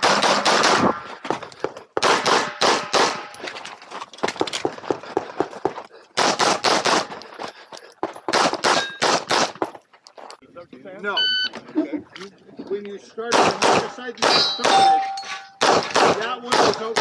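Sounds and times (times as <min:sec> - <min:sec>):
pistol firing shots: 0:00.0 - 0:01.0, 0:02.0 - 0:03.3, 0:08.3 - 0:09.6, 0:13.3 - 0:17.0.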